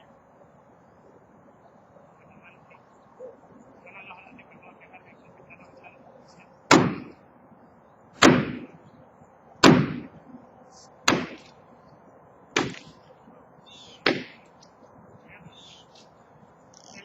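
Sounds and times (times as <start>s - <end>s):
sledgehammer blows ringing: 6.7s - 7.2s, 8.2s - 8.7s, 9.6s - 10.2s, 11.1s - 11.5s, 12.6s - 13.0s, 14.0s - 14.4s.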